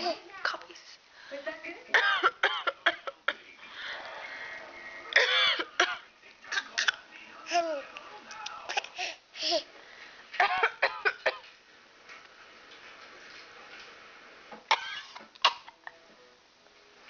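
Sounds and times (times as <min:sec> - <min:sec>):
woman coughing: 0:01.9 - 0:03.4, 0:05.2 - 0:07.0, 0:10.4 - 0:11.4, 0:14.7 - 0:15.8
baby coughing: 0:02.0 - 0:03.0, 0:05.2 - 0:07.7, 0:10.4 - 0:11.4, 0:14.7 - 0:15.8.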